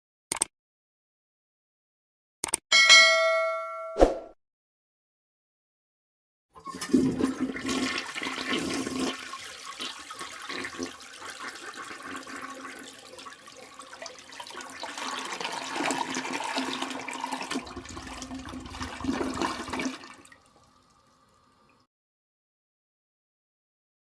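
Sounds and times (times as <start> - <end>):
toilet flushing: 6.6 - 21.9.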